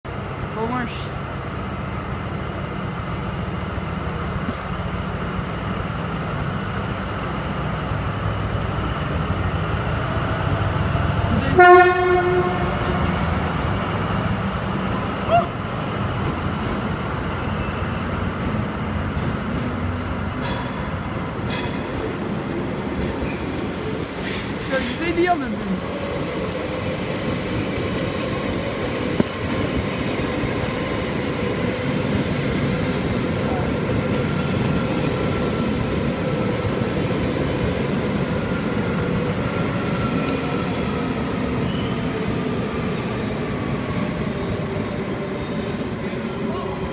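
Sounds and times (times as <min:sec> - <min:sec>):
horn blast: 0:11.6 - 0:12.9.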